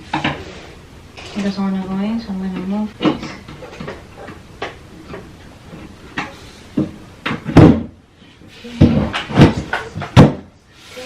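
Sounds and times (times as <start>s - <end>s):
wooden panels knocking: 6.8s - 8.0s.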